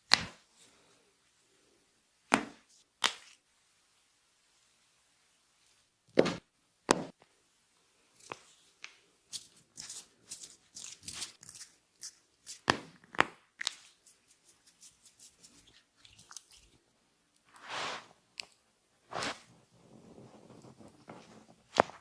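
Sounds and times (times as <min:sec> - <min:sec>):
hands brushing and patting skin: 0:13.6 - 0:16.8, 0:19.1 - 0:19.6.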